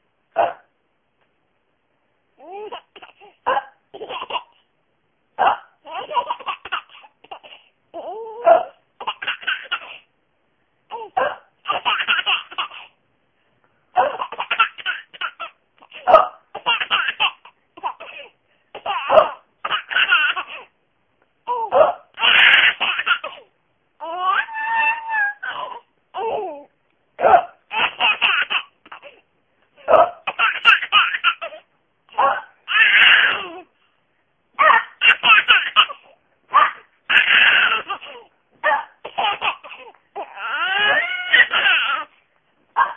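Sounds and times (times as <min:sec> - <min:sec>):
baby laughing: 0:02.4 - 0:04.6, 0:05.8 - 0:10.1, 0:10.9 - 0:13.0, 0:13.9 - 0:20.7, 0:21.5 - 0:29.2, 0:29.8 - 0:33.7, 0:34.6 - 0:38.3, 0:39.0 - 0:42.2.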